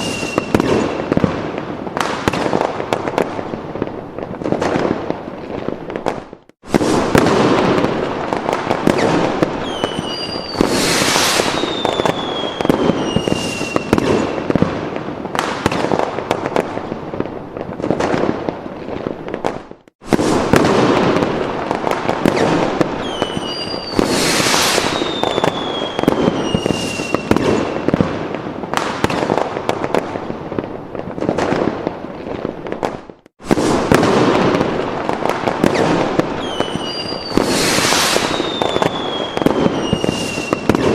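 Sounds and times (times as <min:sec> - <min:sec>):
rocket whistles falling: 0:00.0 - 0:01.0, 0:08.8 - 0:14.5, 0:22.2 - 0:27.9, 0:35.6 - 0:40.9
fireworks bangs and crackling: 0:00.0 - 0:40.9.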